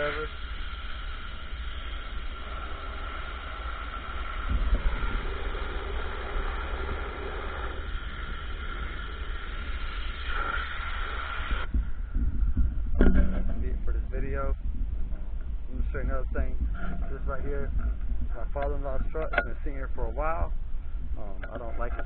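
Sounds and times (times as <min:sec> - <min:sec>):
pressure washer spraying water: 0:00.0 - 0:11.7
low rumble: 0:00.0 - 0:22.0
pump whine: 0:00.0 - 0:22.0.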